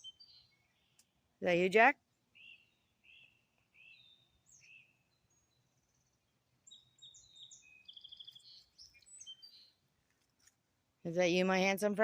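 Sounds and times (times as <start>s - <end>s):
songbirds chirping faintly: 0.0s - 12.0s.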